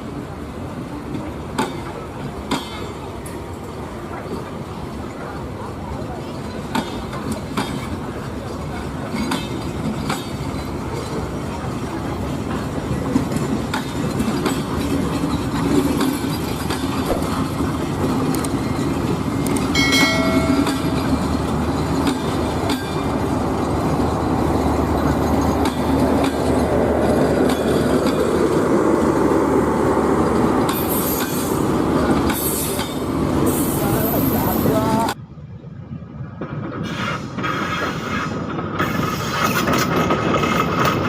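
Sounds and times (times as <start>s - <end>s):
train rumbling on track: 0.0s - 41.0s
wheels clicking over rail joints: 5.2s - 35.2s, 36.4s - 41.0s
high wheel squeal: 30.7s - 31.7s.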